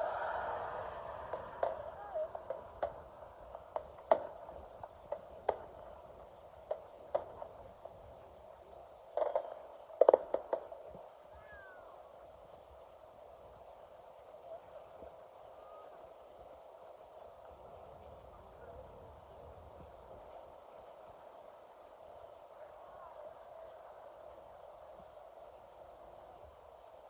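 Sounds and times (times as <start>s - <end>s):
fireworks cracking: 0.0s - 6.0s, 9.2s - 10.9s.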